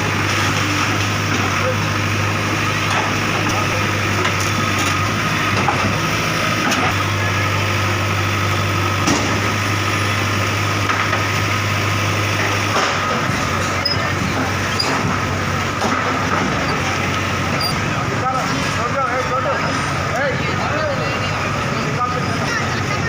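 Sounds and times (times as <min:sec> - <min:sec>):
bulldozer engine idling: 0:00.0 - 0:23.0.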